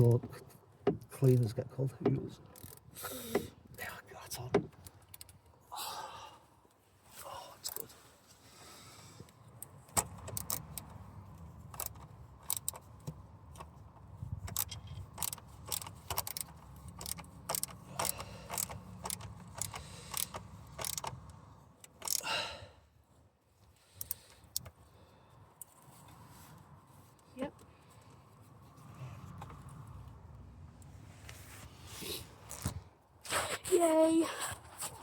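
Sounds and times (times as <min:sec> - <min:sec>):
metallic clicks of hand tools: 0:10.0 - 0:10.9, 0:11.7 - 0:12.9, 0:14.4 - 0:22.3, 0:24.0 - 0:24.8.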